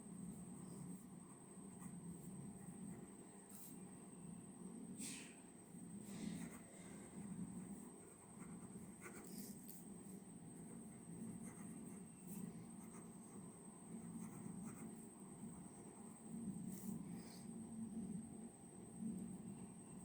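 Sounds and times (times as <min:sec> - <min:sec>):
pen scratching on paper: 0:00.2 - 0:03.8, 0:06.0 - 0:17.5.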